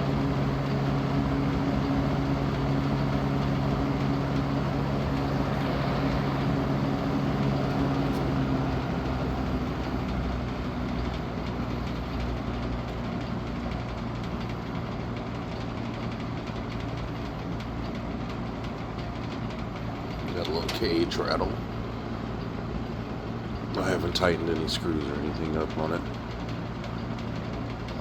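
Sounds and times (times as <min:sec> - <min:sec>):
fan motor hum: 0:00.0 - 0:28.0
rush of air: 0:05.1 - 0:08.6.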